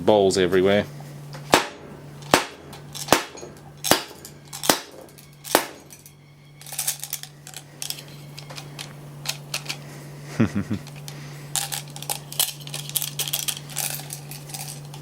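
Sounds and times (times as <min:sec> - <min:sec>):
hammer blows on metal: 0:01.4 - 0:06.2
metallic clicks and rattles: 0:02.2 - 0:09.8, 0:10.9 - 0:15.0.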